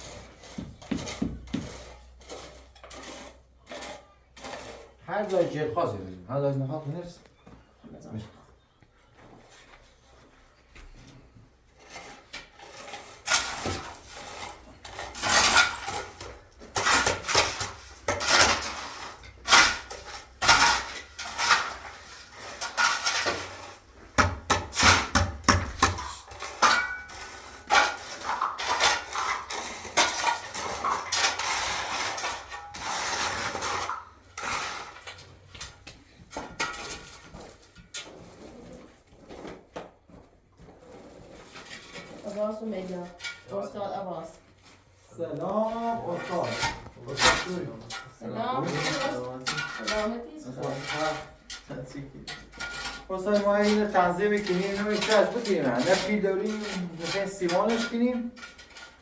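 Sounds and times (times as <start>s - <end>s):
scraping: 9.4s - 59.0s
hard objects clattering: 13.2s - 38.6s.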